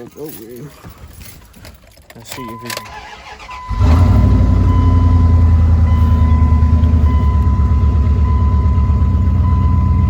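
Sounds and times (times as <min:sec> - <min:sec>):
vehicle engine idling: 0:02.9 - 0:10.0.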